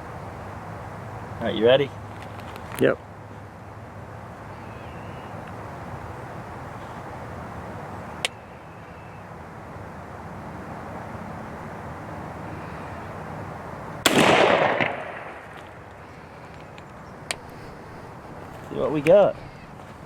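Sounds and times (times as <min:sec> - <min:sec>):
steady outdoor hiss: 0:00.0 - 0:20.0
shotgun shot: 0:14.0 - 0:15.6.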